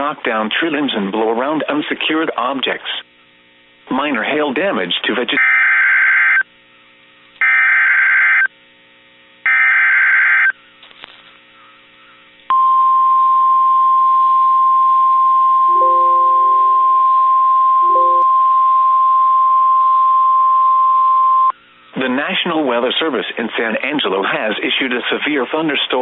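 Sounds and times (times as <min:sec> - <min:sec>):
steady alarm tone: 0:15.7 - 0:18.6.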